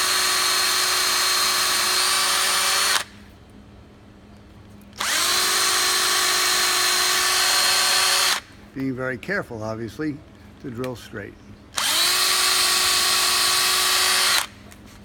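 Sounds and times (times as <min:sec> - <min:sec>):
power drill drilling: 0:00.0 - 0:03.1, 0:05.0 - 0:08.4, 0:11.8 - 0:14.5.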